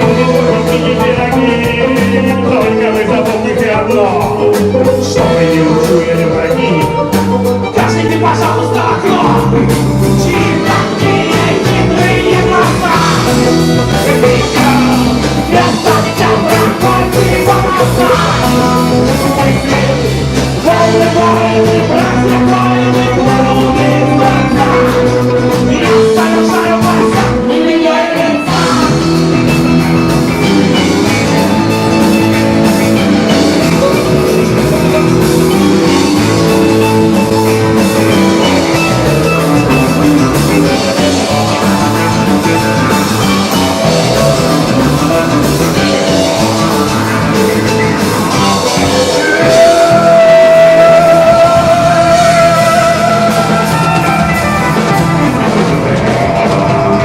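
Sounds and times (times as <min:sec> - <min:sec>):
rock band playing: 0:00.0 - 0:57.0
electric guitar lead note: 0:28.5 - 0:57.0.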